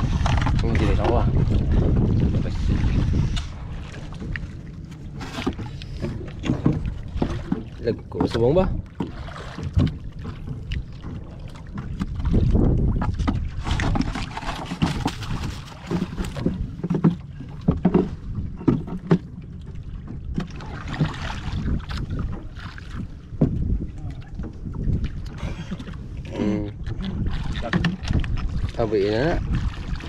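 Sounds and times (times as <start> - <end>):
water splashing: 0.0 - 30.0
wind buffeting microphone: 0.0 - 30.0.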